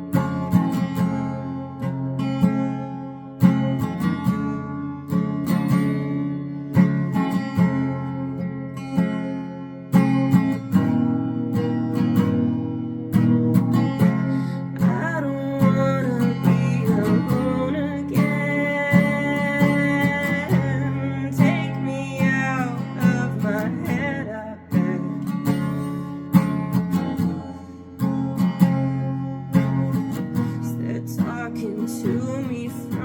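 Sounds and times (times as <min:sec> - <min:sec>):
acoustic guitar strumming: 0:00.0 - 0:33.0
person singing: 0:14.1 - 0:26.2, 0:29.6 - 0:33.0.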